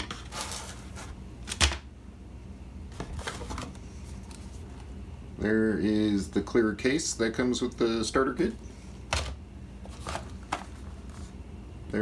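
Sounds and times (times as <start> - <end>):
packaging rustling: 0.0 - 1.7, 9.8 - 11.4.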